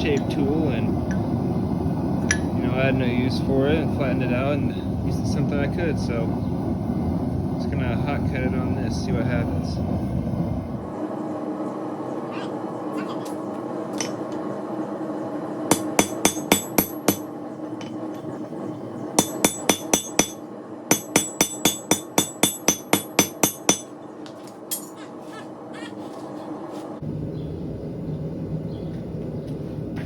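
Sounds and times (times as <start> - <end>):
steady hum: 0.0 - 30.0
hammer striking metal: 15.7 - 17.3, 19.2 - 24.0.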